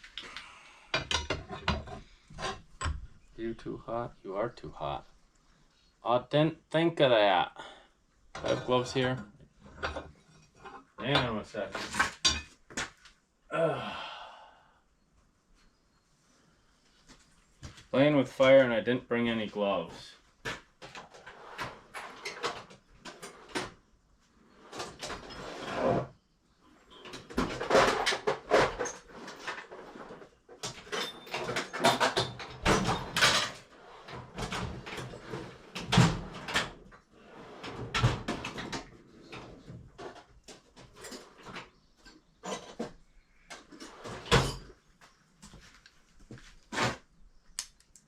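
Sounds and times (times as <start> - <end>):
tools and metal parts clattering: 1.0 - 3.1, 8.4 - 12.6, 26.9 - 37.0, 37.6 - 44.8.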